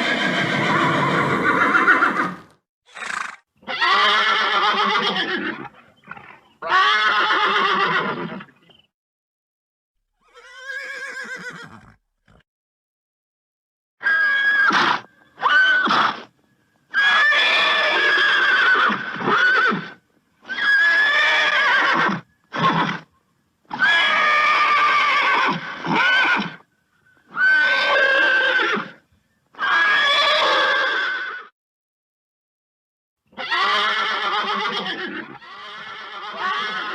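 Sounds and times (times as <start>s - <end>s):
horse neighing: 0.0s - 8.6s, 10.2s - 12.4s, 16.9s - 23.1s, 27.3s - 29.0s, 29.6s - 31.5s, 33.4s - 36.9s.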